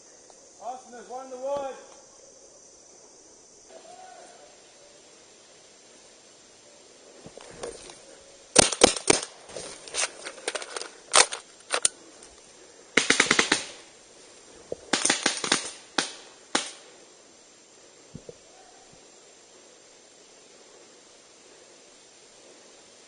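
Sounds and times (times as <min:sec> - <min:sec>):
paintball guns firing: 0:08.5 - 0:09.4, 0:13.0 - 0:13.9, 0:14.9 - 0:16.9.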